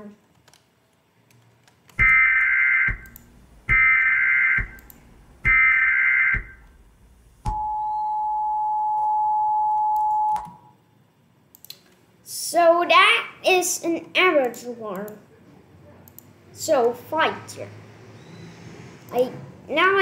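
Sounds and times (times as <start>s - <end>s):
data bursts: 2.0s - 6.7s
steady two-tone attention signal: 7.5s - 10.4s.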